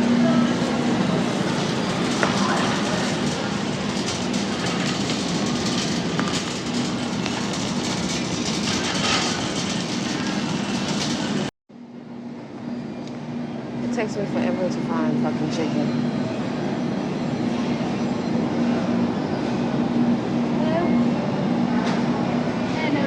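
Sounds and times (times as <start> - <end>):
store ambience: 0.0 - 11.5, 12.8 - 23.0
shopping cart rattling: 0.9 - 11.5.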